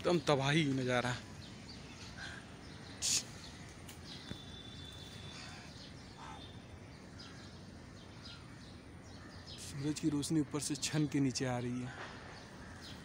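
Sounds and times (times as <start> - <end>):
birds chirping: 0.0 - 13.0
distant city noise: 0.0 - 13.0
sharp burst of hiss: 3.0 - 3.4.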